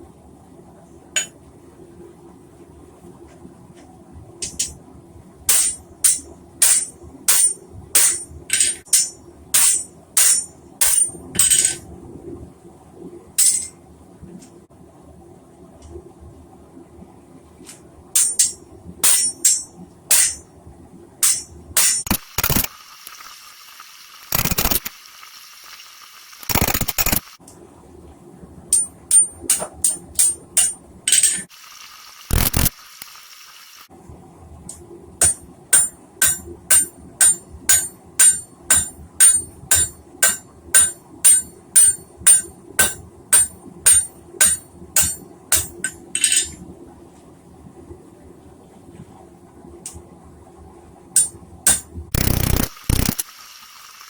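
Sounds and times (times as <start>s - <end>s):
steady low hum: 0.0s - 53.3s
hammer striking steel on anvil: 5.5s - 11.8s, 13.4s - 13.8s, 18.2s - 20.5s, 21.2s - 22.7s, 28.7s - 31.5s, 35.2s - 46.6s, 51.2s - 53.1s.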